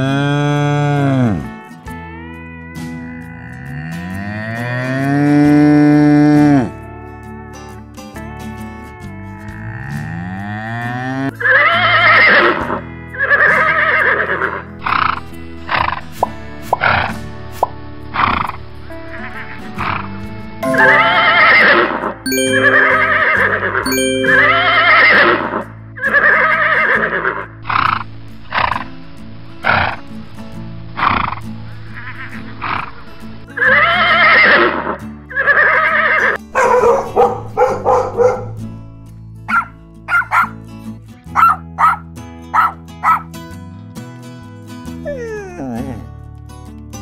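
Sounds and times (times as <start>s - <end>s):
horse whinnying: 11.4s - 14.6s, 26.0s - 27.5s, 35.3s - 36.4s
background music: 11.4s - 34.4s, 36.4s - 43.3s
dog yipping: 36.6s - 38.7s, 39.5s - 40.6s, 41.3s - 43.3s, 45.0s - 46.0s.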